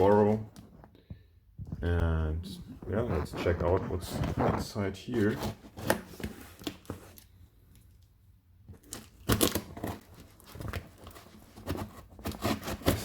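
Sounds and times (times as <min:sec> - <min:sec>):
cardboard package tearing: 0:02.9 - 0:07.3, 0:08.8 - 0:13.0.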